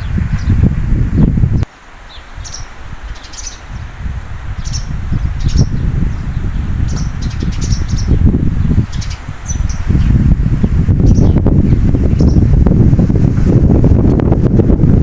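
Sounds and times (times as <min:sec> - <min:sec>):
strong wind buffeting microphone: 0:00.0 - 0:15.0
small bird chirping: 0:01.2 - 0:03.9, 0:04.6 - 0:11.5.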